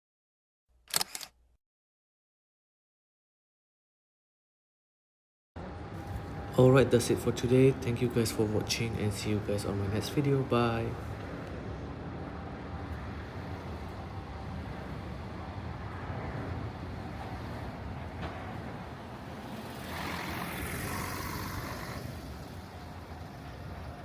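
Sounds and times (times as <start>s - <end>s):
low rumble of road vehicles: 5.6s - 24.0s
traffic hiss: 6.0s - 24.0s.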